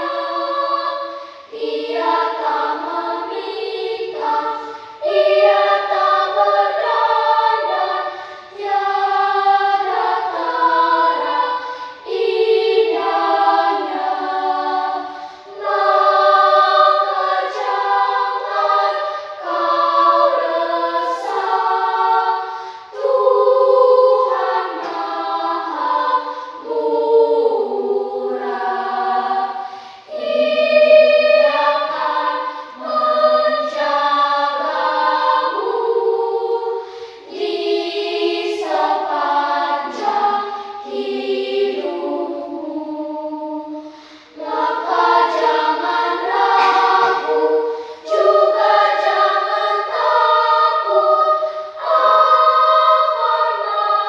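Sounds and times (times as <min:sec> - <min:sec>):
choir singing a hymn: 0:00.0 - 0:54.0
singers breathing: 0:01.0 - 0:01.6, 0:04.5 - 0:05.0, 0:08.0 - 0:08.6, 0:11.5 - 0:12.1, 0:14.9 - 0:15.6, 0:18.9 - 0:19.5, 0:22.4 - 0:23.0, 0:26.2 - 0:26.6, 0:29.5 - 0:30.2, 0:32.4 - 0:32.8, 0:36.8 - 0:37.4, 0:40.4 - 0:40.9, 0:43.7 - 0:44.4, 0:47.6 - 0:48.1, 0:51.3 - 0:51.8.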